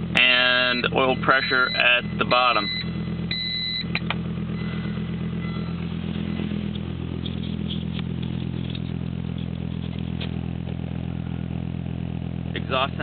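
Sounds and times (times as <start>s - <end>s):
car engine idling: 0.0s - 13.0s
short electronic beep: 1.2s - 4.0s, 4.6s - 6.6s.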